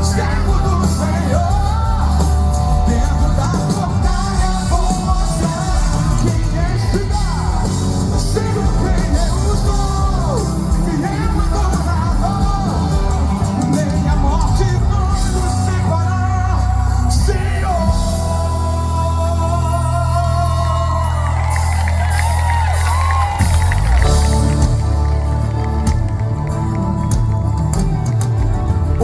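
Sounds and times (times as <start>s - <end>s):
person singing: 0.0s - 21.6s
live band playing gospel music: 0.0s - 29.0s.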